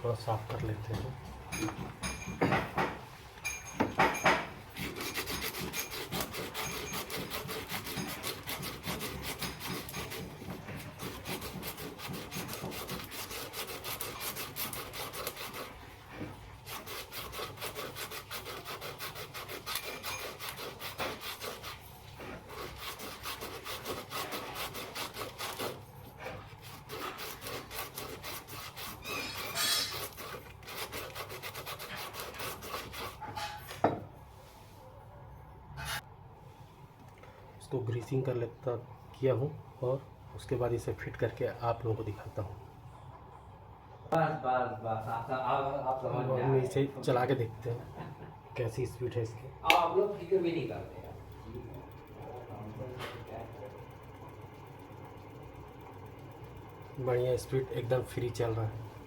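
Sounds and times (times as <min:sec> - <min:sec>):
rubbing and scraping fan part: 0:01.5 - 0:34.8, 0:46.6 - 0:59.0.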